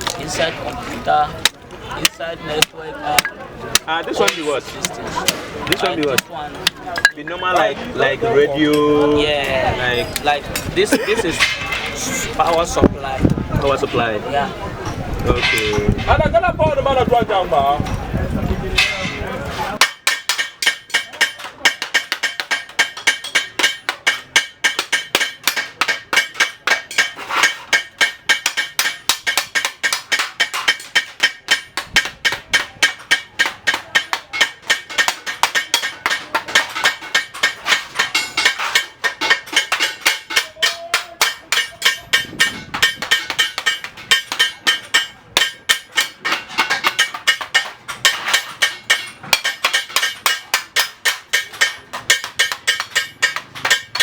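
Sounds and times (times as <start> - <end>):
hammer striking metal: 1.4 - 7.7, 19.8 - 54.0.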